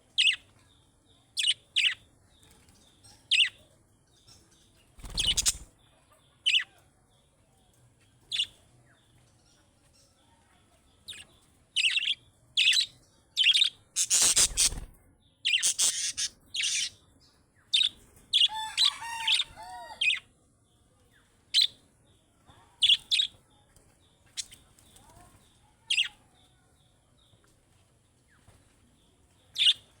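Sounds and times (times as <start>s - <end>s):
budgerigar chirps: 11.8s - 14.8s, 15.5s - 17.0s
budgerigar warbling chatter: 13.4s - 14.8s, 15.5s - 17.0s
budgerigar harsh call: 15.6s - 16.9s.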